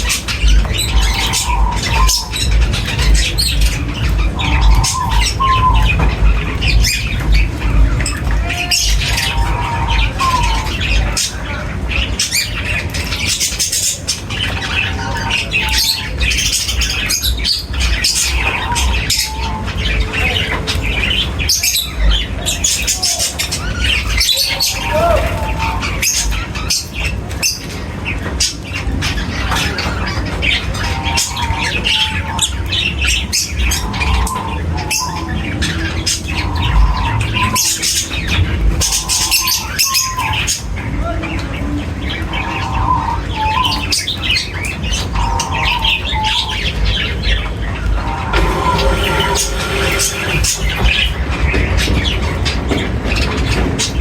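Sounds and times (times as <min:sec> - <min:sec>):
steady low rumble: 0:00.0 - 0:14.5, 0:47.6 - 0:52.1
birds squawking and chirping: 0:00.0 - 0:54.0.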